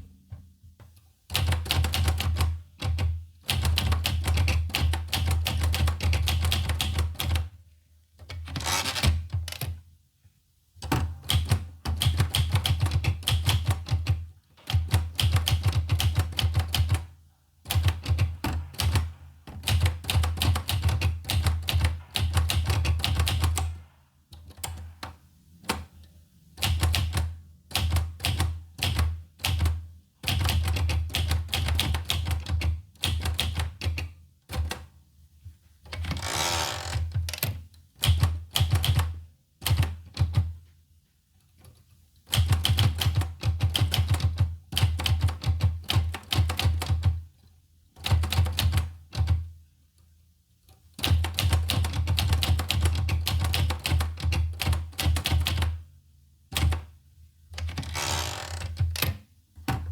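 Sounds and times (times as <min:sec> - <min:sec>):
typewriter key strikes: 0:17.7 - 0:23.8
typewriter rasping: 0:57.6 - 0:59.1.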